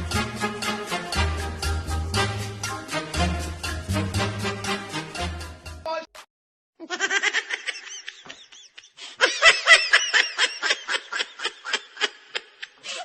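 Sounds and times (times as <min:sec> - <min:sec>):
music: 0:00.0 - 0:05.9
person laughing hard: 0:06.8 - 0:13.0.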